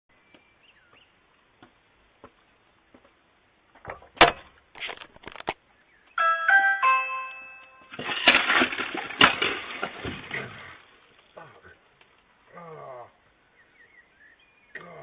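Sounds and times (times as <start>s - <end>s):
doorbell chime: 6.2s - 8.0s.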